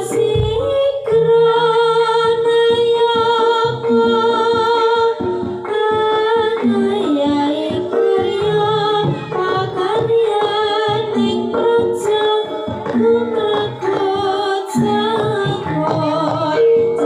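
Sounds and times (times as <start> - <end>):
drum strokes: 2.5 - 17.0
high wavering melody: 6.1 - 17.0.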